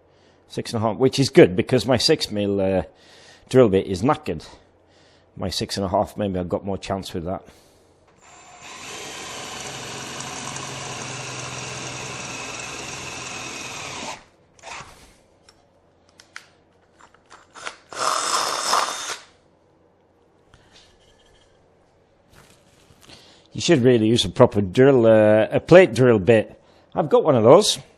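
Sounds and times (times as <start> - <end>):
electric drill drilling: 8.2 - 14.9, 17.9 - 19.3.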